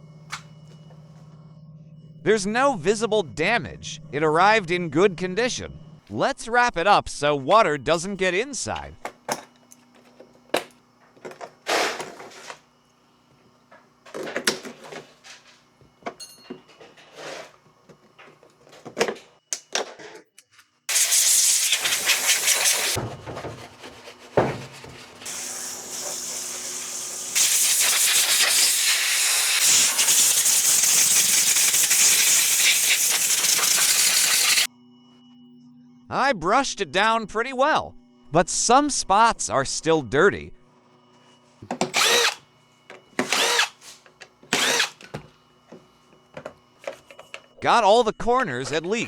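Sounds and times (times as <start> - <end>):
water spraying: 20.9 - 23.0, 24.1 - 34.7.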